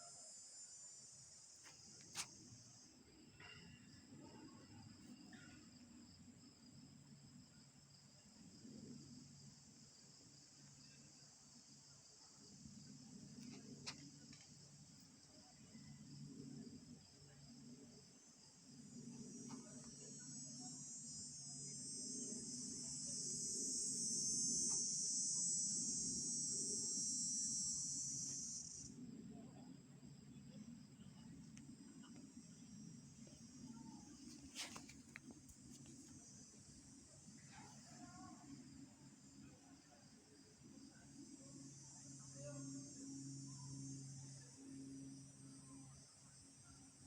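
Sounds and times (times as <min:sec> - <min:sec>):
crickets chirping: 0:00.0 - 0:47.0
faint low hum: 0:00.0 - 0:47.0
insect buzzing song: 0:18.8 - 0:29.0.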